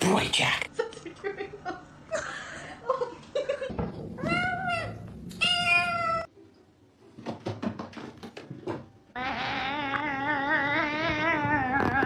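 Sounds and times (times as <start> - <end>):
cat meowing: 4.2 - 6.3, 9.2 - 12.0.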